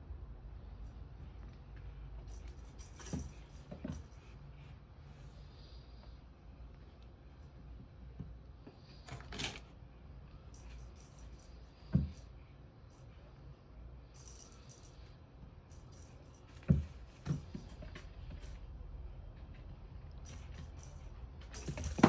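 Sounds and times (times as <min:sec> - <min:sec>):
cat toy jingling and rattling: 0:02.2 - 0:04.4, 0:14.2 - 0:15.1, 0:15.7 - 0:18.6, 0:20.2 - 0:22.0.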